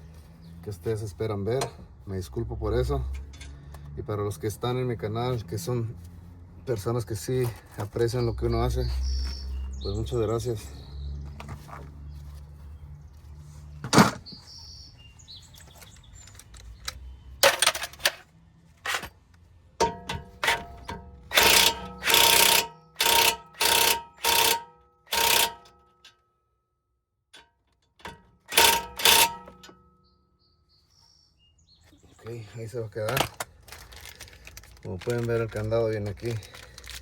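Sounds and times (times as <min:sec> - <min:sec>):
metallic rattling with ringing tone: 0:19.8 - 0:26.2, 0:28.0 - 0:29.9.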